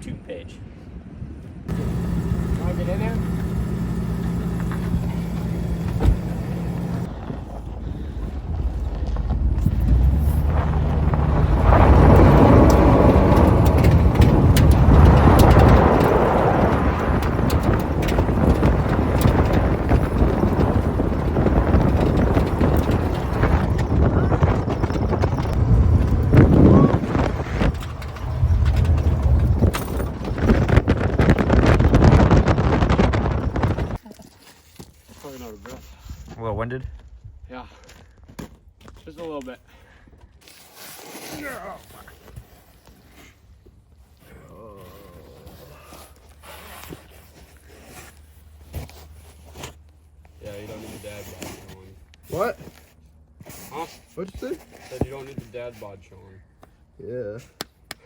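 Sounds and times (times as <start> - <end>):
wind buffeting microphone: 0.9 - 34.0
low mechanical hum: 1.7 - 34.0
rough low rumble: 1.7 - 34.0
handling knocks and rustles: 1.7 - 35.7.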